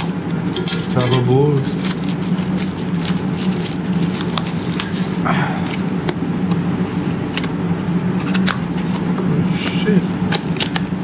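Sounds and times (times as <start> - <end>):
cards and foil wrappers rustling: 0.0 - 5.9
steady low hum: 0.0 - 11.0.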